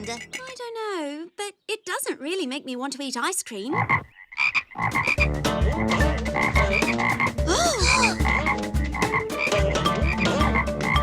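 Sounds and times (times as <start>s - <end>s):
low thumping beat: 4.9s - 11.0s.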